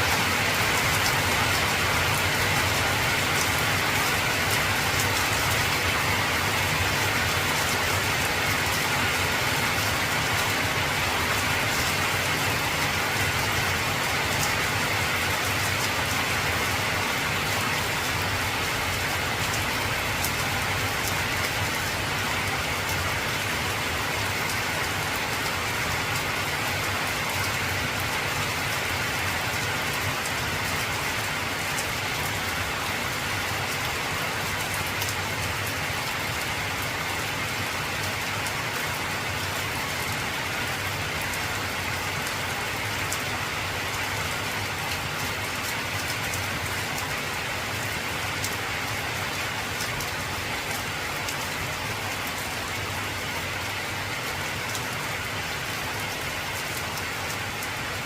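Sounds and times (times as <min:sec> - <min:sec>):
heavy rain on a metal roof: 0:00.0 - 0:58.0.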